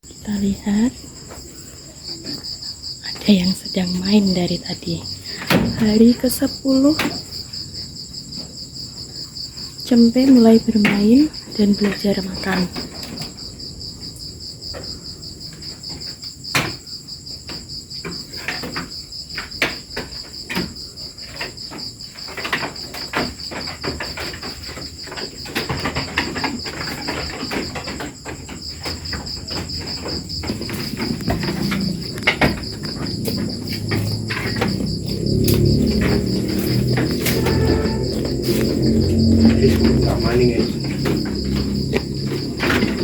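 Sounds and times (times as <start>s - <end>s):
crickets chirring: 0.0s - 43.0s
short knocks and clatters: 15.6s - 43.0s
low rumble: 30.3s - 43.0s.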